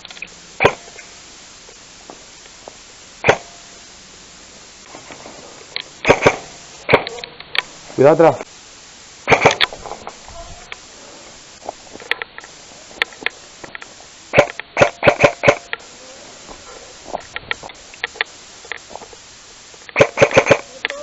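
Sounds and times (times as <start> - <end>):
airsoft guns firing: 0.6 - 1.0, 3.2 - 3.6, 6.0 - 7.2, 9.3 - 9.7, 14.3 - 15.7, 19.9 - 20.7.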